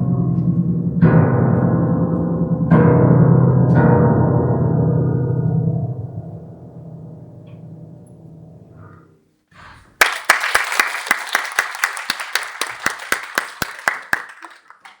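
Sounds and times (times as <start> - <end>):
audience applause: 9.9 - 15.0
sharp claps: 9.9 - 15.0.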